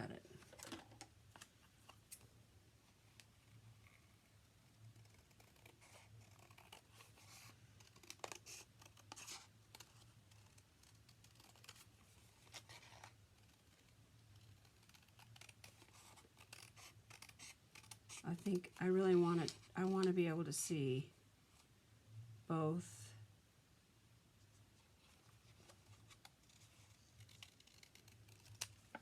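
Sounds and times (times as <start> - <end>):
faint scissors cutting paper: 4.9 - 20.1, 25.4 - 29.0.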